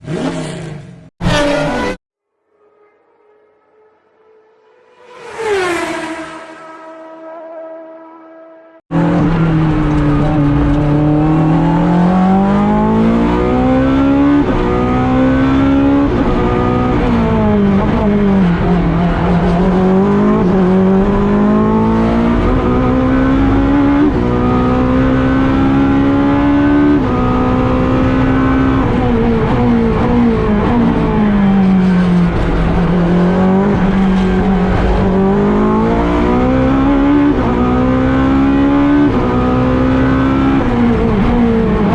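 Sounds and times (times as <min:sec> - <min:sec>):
racing car engine at high revs: 0:00.0 - 0:02.0, 0:03.6 - 0:41.9.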